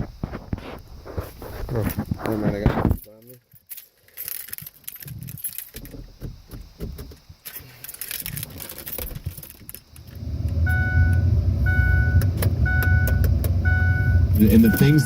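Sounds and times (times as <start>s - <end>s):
keys rattling and clicking: 3.0s - 6.5s, 7.1s - 10.2s
vehicle engine running: 10.1s - 15.0s
electronic warning chime beeping: 10.6s - 15.0s.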